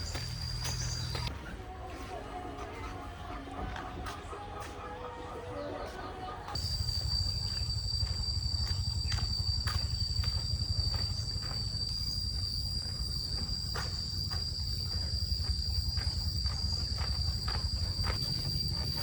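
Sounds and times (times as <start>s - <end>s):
insects droning: 0.0s - 1.3s, 5.6s - 19.0s.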